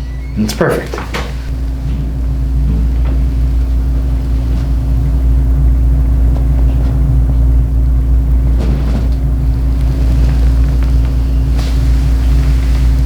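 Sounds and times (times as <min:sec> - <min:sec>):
constant hum: 0:00.0 - 0:13.0
low mechanical rumble: 0:00.0 - 0:13.0.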